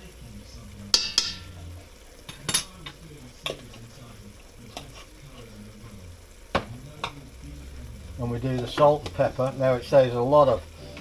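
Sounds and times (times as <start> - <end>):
spoon knocking against frying pan: 0.9 - 1.6, 6.5 - 7.2.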